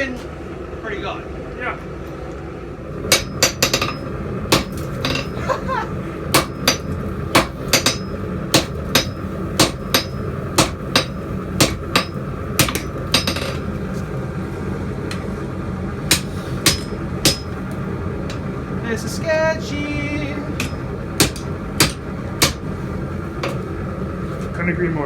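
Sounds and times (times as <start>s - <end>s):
hammer striking hot steel on anvil: 3.0s - 5.5s, 6.3s - 13.7s, 16.1s - 18.5s, 20.4s - 22.8s, 23.4s - 23.7s.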